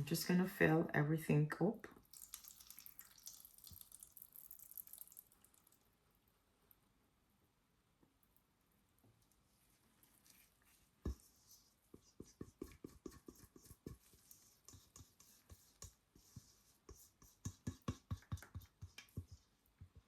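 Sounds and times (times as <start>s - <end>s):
utensil tapping a container: 17.2s - 20.0s.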